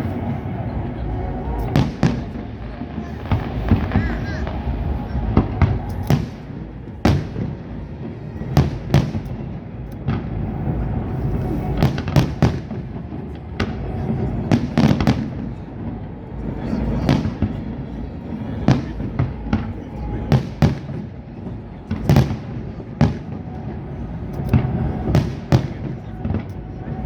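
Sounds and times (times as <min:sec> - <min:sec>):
fireworks bursting: 0:00.0 - 0:27.0
low background noise: 0:00.0 - 0:27.0.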